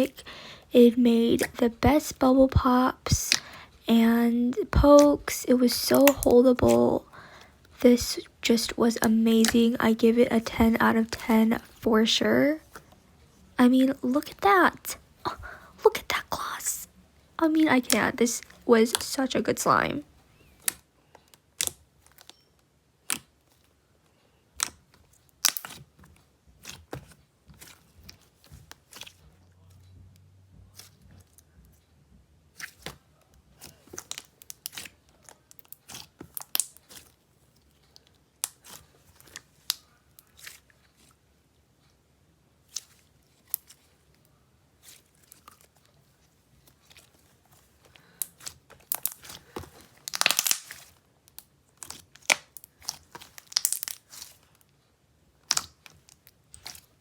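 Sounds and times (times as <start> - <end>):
slime squished by hand: 24.6 - 26.0, 33.6 - 37.2, 46.6 - 54.5, 55.4 - 57.0.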